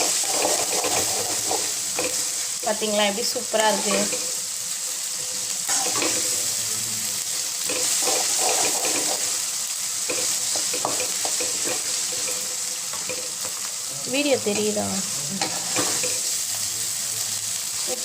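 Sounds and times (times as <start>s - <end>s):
spatula scraping a pan: 0.0s - 2.4s, 5.7s - 6.4s, 7.6s - 13.5s, 15.4s - 16.4s
onions sizzling in hot oil: 0.0s - 18.0s.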